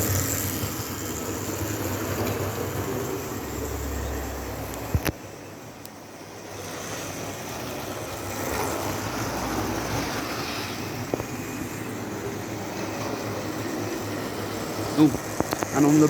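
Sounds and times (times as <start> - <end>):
model train whirring rumble: 0.0 - 5.0.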